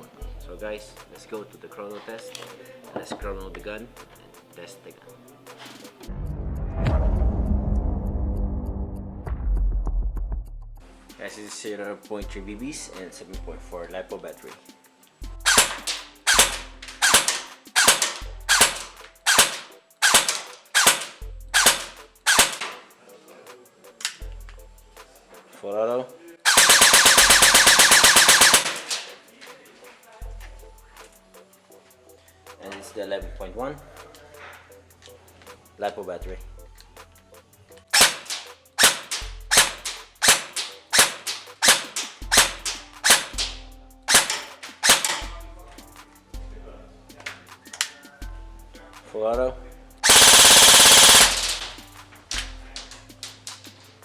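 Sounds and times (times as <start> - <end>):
airsoft gun firing: 15.5 - 22.8, 26.5 - 29.1, 38.0 - 43.5, 44.1 - 45.2, 50.0 - 51.8.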